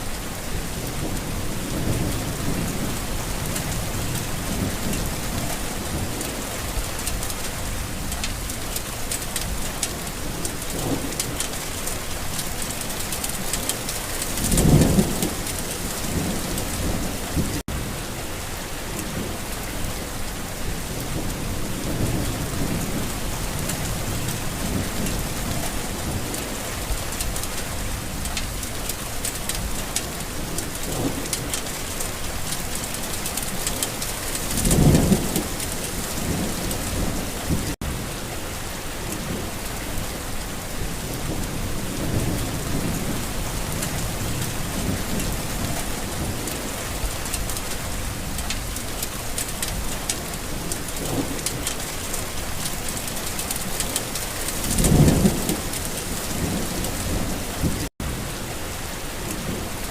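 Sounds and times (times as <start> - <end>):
rain falling: 0.0 - 59.9
thunder rumbling: 20.6 - 38.1, 39.0 - 58.4.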